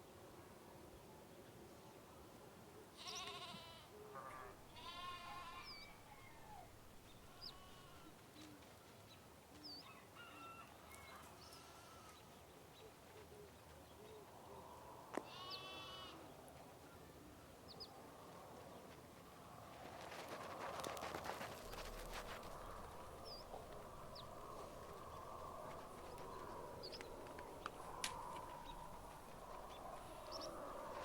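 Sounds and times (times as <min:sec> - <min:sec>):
sheep bleating faintly: 0:03.0 - 0:05.9, 0:07.3 - 0:08.2, 0:11.4 - 0:12.2, 0:15.2 - 0:16.3.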